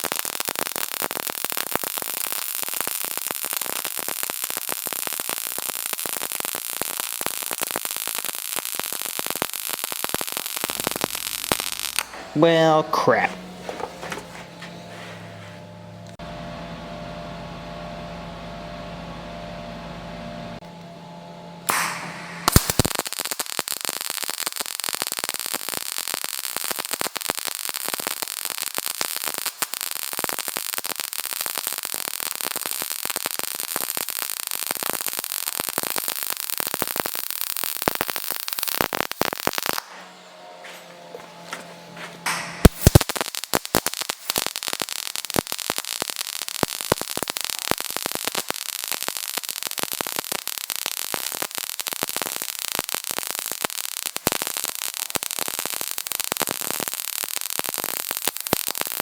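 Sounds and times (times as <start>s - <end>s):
welding arc crackling: 0.0s - 16.2s, 21.6s - 59.0s
low hum: 10.7s - 22.5s.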